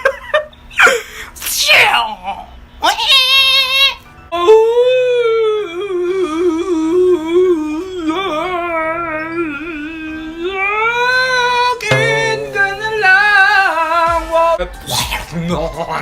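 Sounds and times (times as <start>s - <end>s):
high voice singing wordless melody: 5.2s - 14.6s
held low notes: 8.2s - 14.6s.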